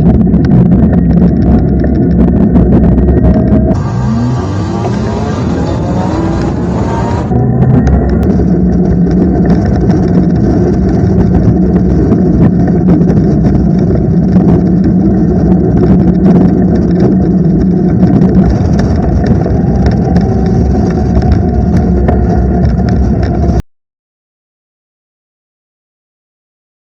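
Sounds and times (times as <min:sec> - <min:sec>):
wind and road noise: 0:00.0 - 0:23.6
electric motor whining: 0:03.3 - 0:09.4.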